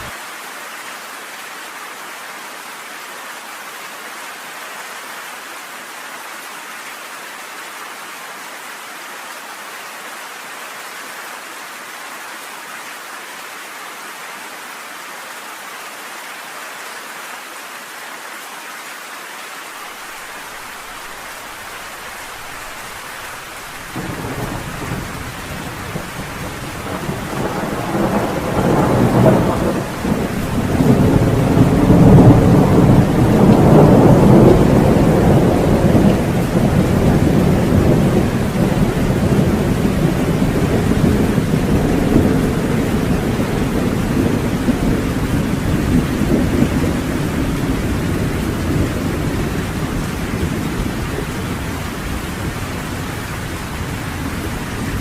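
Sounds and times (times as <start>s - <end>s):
heavy rain falling: 0.0s - 55.0s
thunder rumbling: 22.2s - 55.0s.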